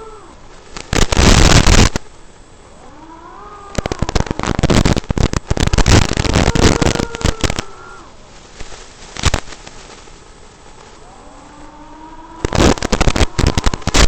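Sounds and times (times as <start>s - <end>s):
drone motors whining: 0.0s - 5.0s
crackling distortion: 0.0s - 14.0s.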